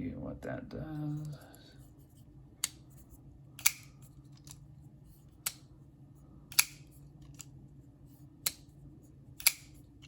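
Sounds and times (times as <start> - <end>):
pocket knife blade clicking: 6.5 - 6.8, 9.4 - 9.8.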